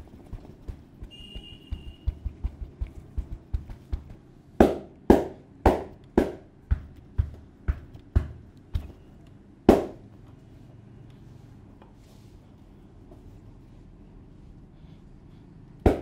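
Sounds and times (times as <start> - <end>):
hands slapping head and shoulders: 0.0 - 8.9.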